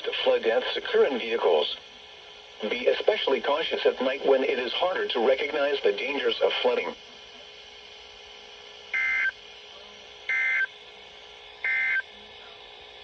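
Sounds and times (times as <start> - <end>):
faint steady hum: 0.0 - 13.0
digital data tone bursts: 9.0 - 9.4, 10.3 - 10.7, 11.6 - 12.1.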